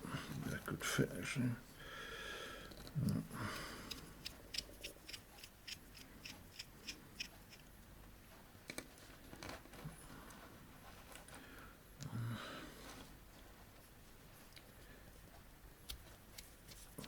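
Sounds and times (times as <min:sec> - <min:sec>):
screwdriver turning a small screw: 0:03.9 - 0:07.7.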